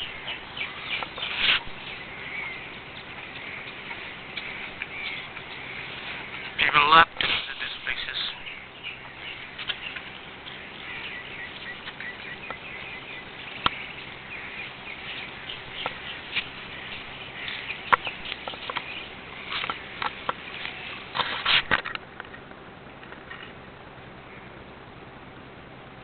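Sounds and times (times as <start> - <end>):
birds chirping: 0.0 - 26.0
outdoor background: 0.0 - 26.0.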